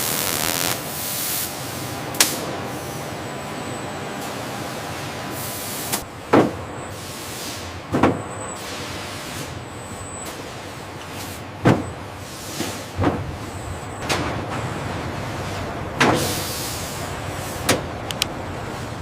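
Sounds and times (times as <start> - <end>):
steady machinery noise: 0.0 - 6.7.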